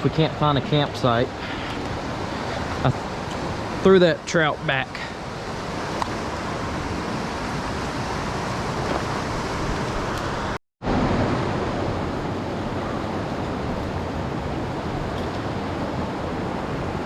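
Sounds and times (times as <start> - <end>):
mountain stream rushing: 0.0 - 17.0.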